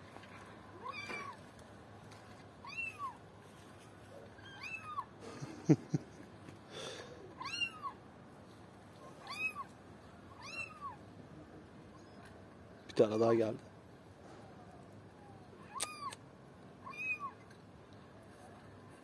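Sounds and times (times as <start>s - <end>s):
kitten meowing: 7.4s - 8.0s, 9.2s - 9.7s, 10.4s - 11.0s, 15.6s - 16.2s, 16.8s - 17.4s.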